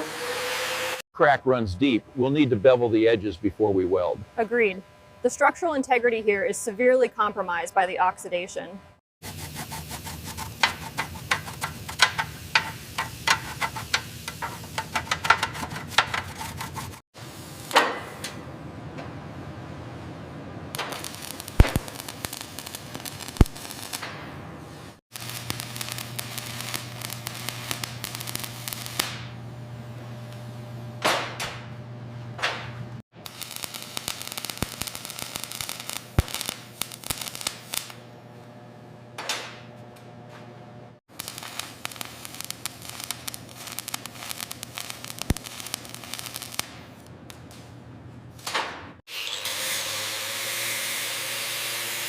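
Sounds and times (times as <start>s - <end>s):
arc welding crackling: 9.2s - 18.3s, 20.8s - 29.4s, 33.2s - 38.1s, 41.1s - 48.4s.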